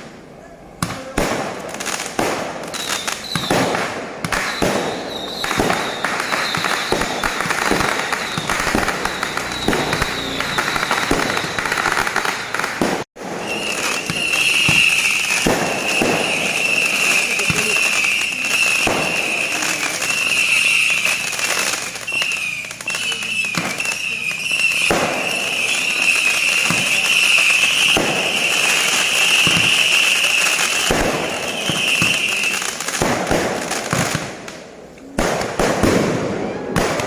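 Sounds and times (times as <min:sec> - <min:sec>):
fireworks banging: 0:00.0 - 0:37.0
fireworks crackling: 0:00.0 - 0:37.0
high steady whistling tone: 0:04.4 - 0:12.0, 0:13.4 - 0:21.4.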